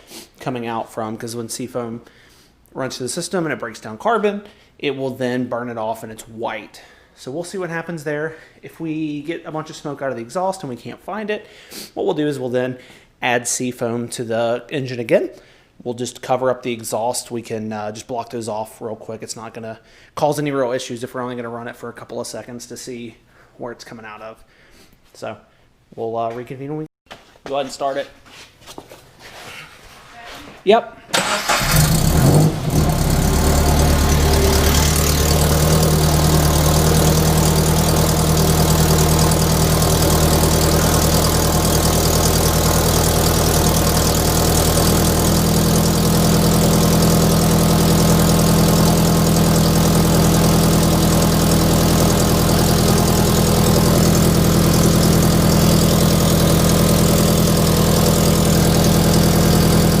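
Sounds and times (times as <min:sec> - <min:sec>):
car engine starting and idling: 0:31.1 - 1:00.0.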